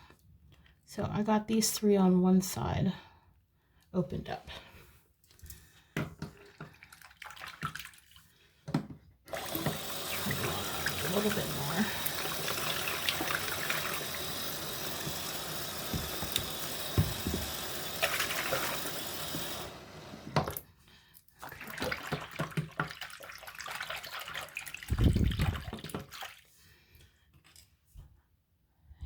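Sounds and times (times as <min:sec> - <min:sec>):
tap water filling a sink: 0:08.7 - 0:20.7, 0:21.4 - 0:26.5.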